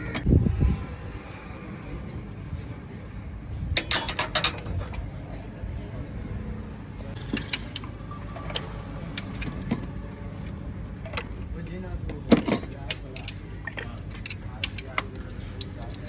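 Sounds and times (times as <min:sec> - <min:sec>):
steady low rumble: 0:00.0 - 0:16.0
metallic clinking and jingling: 0:03.8 - 0:05.2, 0:12.1 - 0:16.0.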